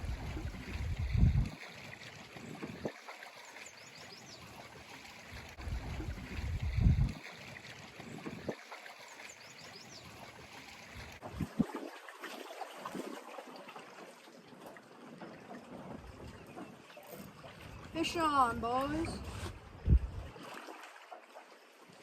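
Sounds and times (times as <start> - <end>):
low rumble: 0.0 - 1.5
lake water lapping: 0.0 - 22.0.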